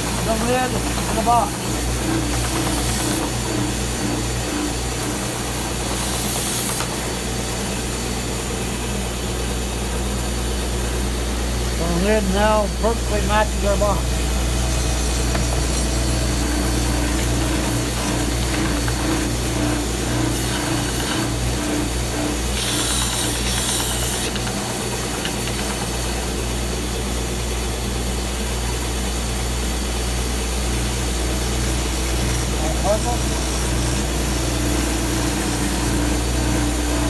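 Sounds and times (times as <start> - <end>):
power tool motor humming: 0.0 - 7.6, 12.8 - 26.7, 30.6 - 37.0.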